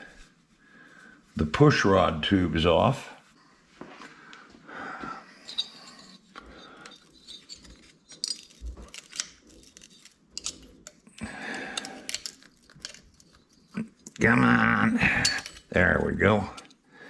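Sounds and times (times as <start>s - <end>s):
metal tools clinking and rattling: 5.3s - 14.3s, 15.0s - 16.8s.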